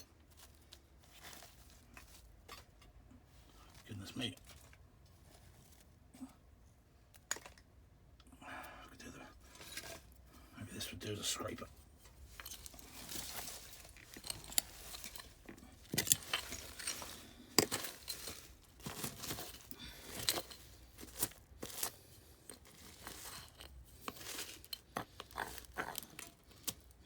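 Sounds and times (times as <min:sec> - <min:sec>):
broken glass clinking and crunching: 0:12.1 - 0:27.0.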